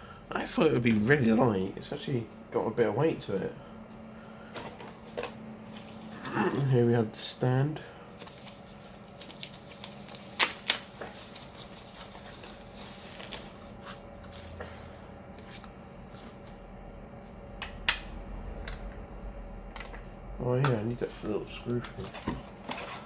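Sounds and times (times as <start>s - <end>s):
packaging clicks and rustles: 8.1s - 14.4s.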